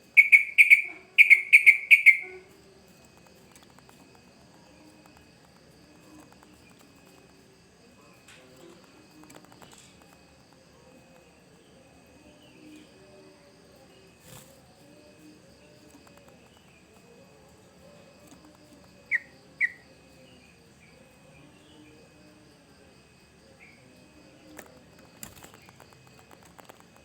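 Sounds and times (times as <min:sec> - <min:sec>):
insects buzzing: 0:00.0 - 0:27.0
bird chirping: 0:00.1 - 0:02.4, 0:19.0 - 0:19.9.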